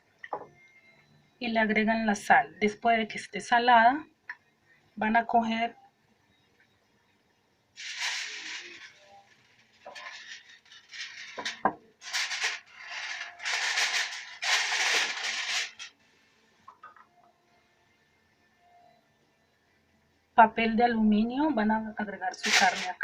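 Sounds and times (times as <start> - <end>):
aluminium foil rustling and crinkling: 7.8 - 16.0, 22.3 - 23.0.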